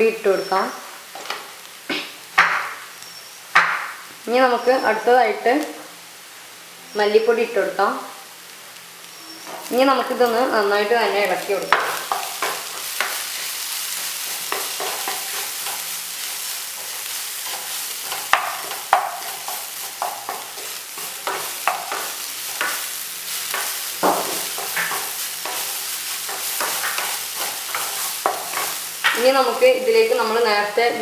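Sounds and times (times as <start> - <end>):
food sizzling in oil: 0.0 - 31.0
spoon scraping pan: 11.1 - 29.7.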